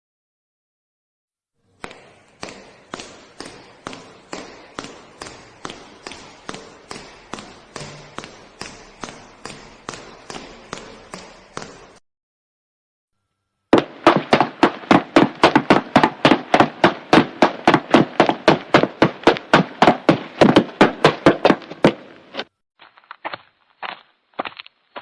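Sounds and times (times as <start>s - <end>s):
quick hard footsteps: 13.7s - 25.0s
faint dull footsteps: 13.8s - 25.0s.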